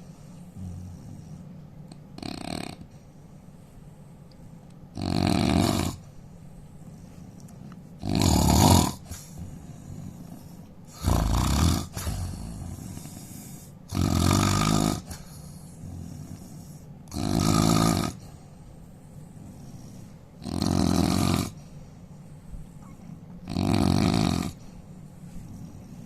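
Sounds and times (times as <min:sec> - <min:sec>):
quiet breathing: 0:00.0 - 0:05.0, 0:05.6 - 0:23.5, 0:24.3 - 0:26.0
man snoring loudly: 0:05.0 - 0:06.0, 0:08.0 - 0:09.2, 0:10.0 - 0:13.0, 0:13.9 - 0:15.2, 0:17.1 - 0:18.2, 0:20.4 - 0:21.6, 0:23.5 - 0:24.6.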